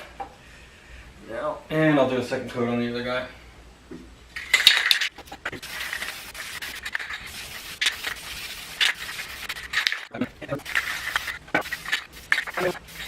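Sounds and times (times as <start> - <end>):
paint rubbing hiss on plastic: 5.1 - 13.0.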